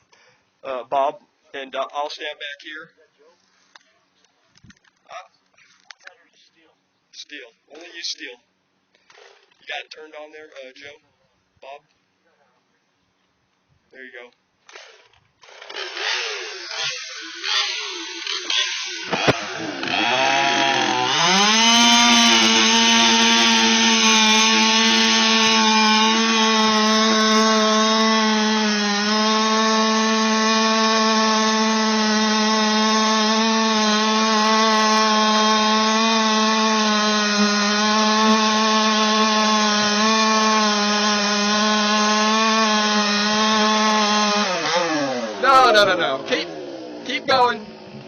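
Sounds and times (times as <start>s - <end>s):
chainsaw cutting wood: 9.0s - 9.7s, 14.6s - 48.0s.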